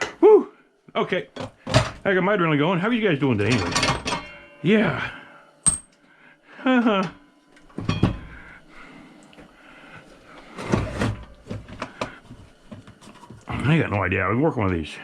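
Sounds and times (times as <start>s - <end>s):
tools and parts clattering: 1.4s - 2.0s, 3.4s - 4.6s, 5.6s - 6.0s, 7.0s - 8.5s.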